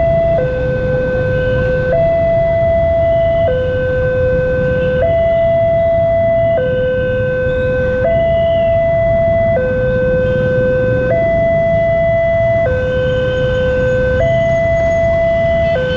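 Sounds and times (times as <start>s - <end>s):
two-tone level-crossing siren: 0.0s - 15.9s.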